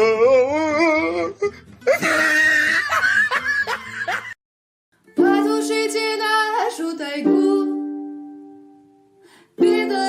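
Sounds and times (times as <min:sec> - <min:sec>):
music: 0:01.2 - 0:04.2, 0:05.0 - 0:10.0
person laughing: 0:01.4 - 0:04.4.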